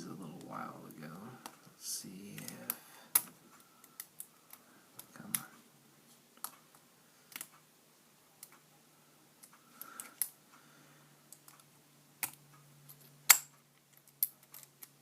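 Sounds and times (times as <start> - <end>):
lock picks clicking metallically: 12.2 - 15.0
lock picks scraping: 12.2 - 15.0.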